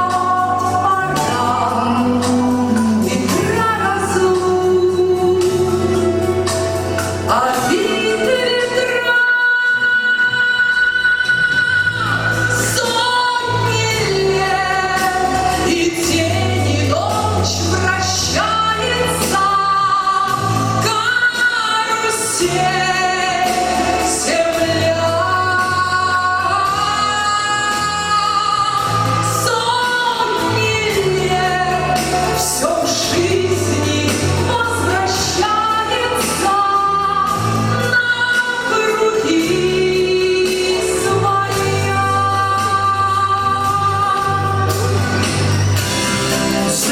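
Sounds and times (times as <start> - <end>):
bass line and drum beat: 0.0 - 9.0
person singing pop song: 0.0 - 46.9.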